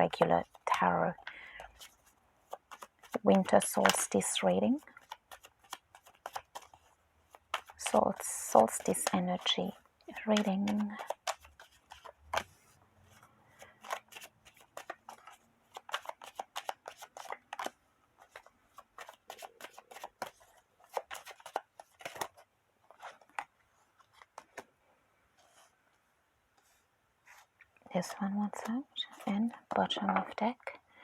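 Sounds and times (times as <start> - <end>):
cards being shuffled: 0.0 - 24.8.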